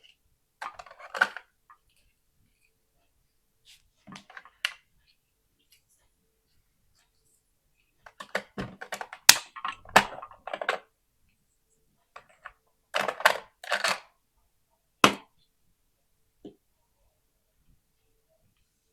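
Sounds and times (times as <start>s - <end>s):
plastic toy pieces clattering: 0.6s - 1.4s, 13.0s - 14.1s.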